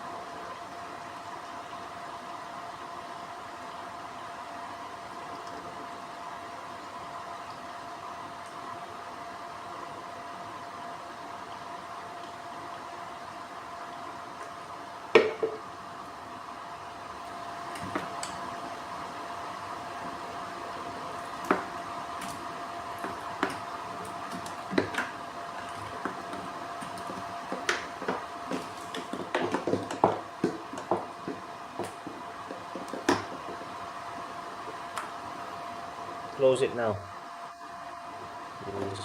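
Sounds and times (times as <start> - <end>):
machine hum: 0.0 - 39.0.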